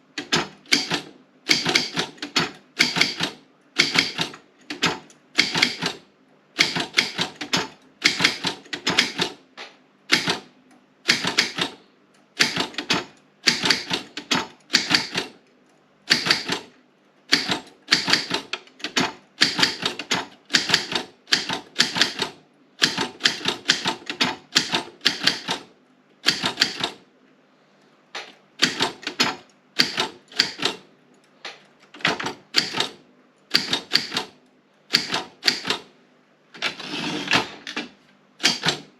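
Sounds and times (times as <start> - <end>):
typewriter key strikes: 0.2 - 6.0, 6.6 - 9.4, 10.1 - 10.4, 11.1 - 11.8, 12.4 - 15.4, 16.1 - 16.7, 17.3 - 25.6, 26.2 - 27.0, 28.6 - 30.8, 32.0 - 35.9, 38.4 - 38.9.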